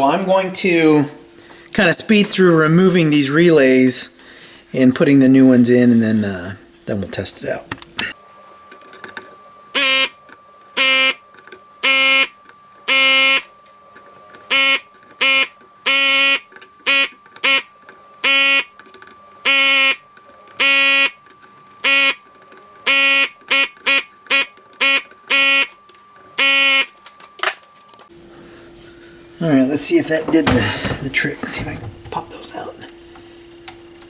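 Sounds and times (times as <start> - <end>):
short buzzing bursts: 9.7 - 10.2, 10.8 - 11.2, 11.8 - 13.5, 14.5 - 18.7, 19.4 - 20.0, 20.6 - 21.2, 21.8 - 22.2, 22.8 - 25.8, 26.4 - 27.0.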